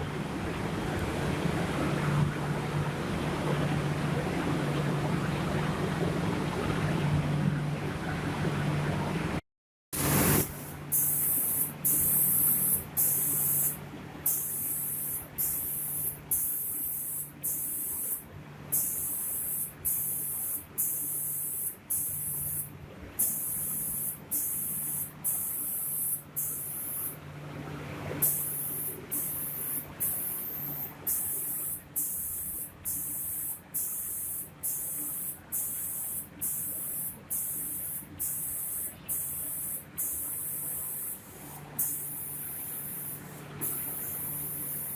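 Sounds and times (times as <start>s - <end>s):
low machine hum: 0.0s - 9.4s, 10.0s - 44.9s
spray guns hissing: 10.0s - 27.2s, 28.2s - 44.9s.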